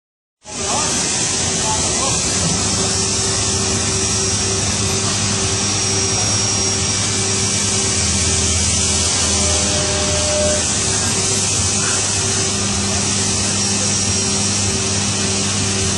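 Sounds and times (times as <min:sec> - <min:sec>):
machining center running: 0:00.5 - 0:15.9
faint tone: 0:03.3 - 0:10.7.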